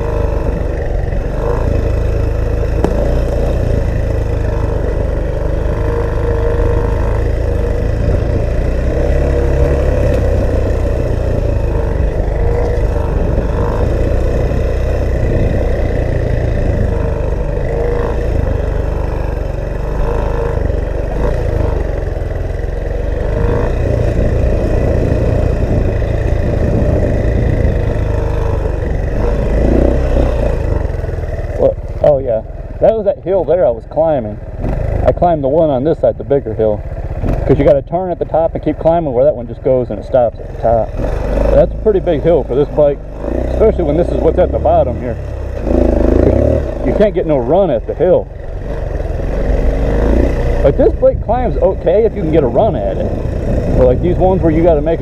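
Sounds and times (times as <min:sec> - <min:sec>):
dirt bike engine: 0:00.0 - 0:55.0
wind rumble on microphone: 0:06.7 - 0:31.3, 0:49.6 - 0:55.0.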